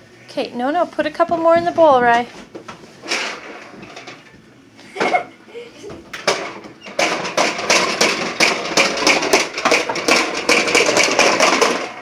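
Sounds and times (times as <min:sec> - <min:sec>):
popcorn popper clattering: 0:06.1 - 0:12.0.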